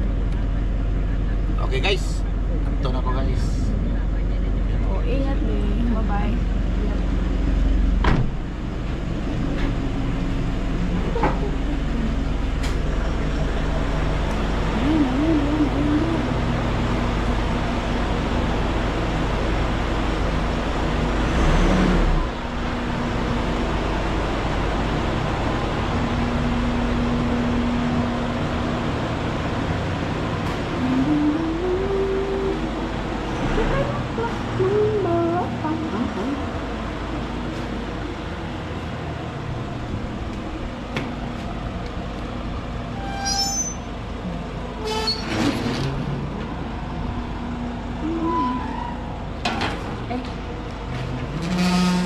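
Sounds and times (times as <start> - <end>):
vehicle engine and road noise: 0.0 - 52.0.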